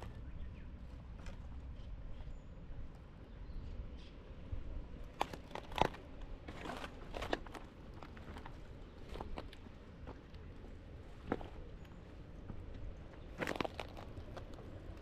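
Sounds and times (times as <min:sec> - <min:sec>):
footsteps crunching: 0:13.4 - 0:14.5.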